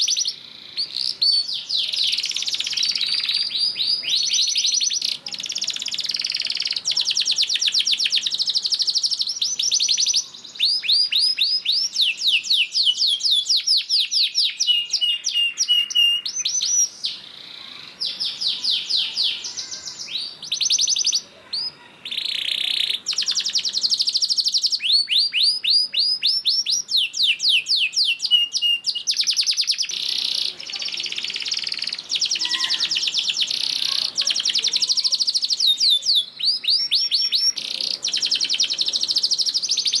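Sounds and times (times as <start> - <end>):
canary singing rolling trills: 0.0 - 40.0.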